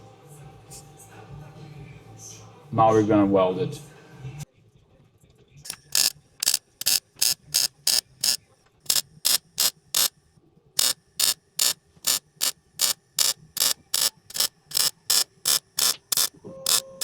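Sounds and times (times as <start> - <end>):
short welding bursts: 5.7 - 10.1, 10.8 - 17.0.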